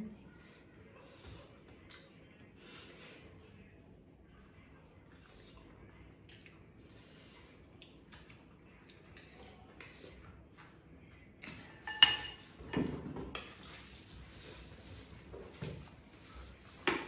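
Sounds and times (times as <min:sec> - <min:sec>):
tableware clinking: 0:11.8 - 0:13.6.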